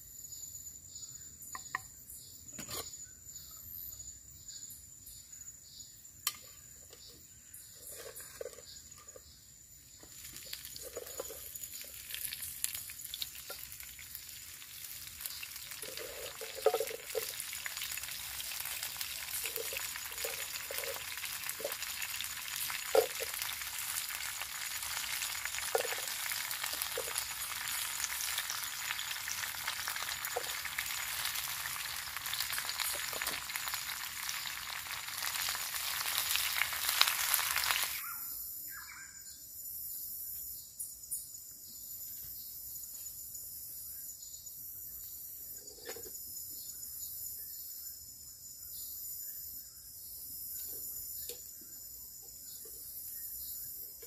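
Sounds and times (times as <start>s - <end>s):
food sizzling in a pan: 9.9s - 38.1s.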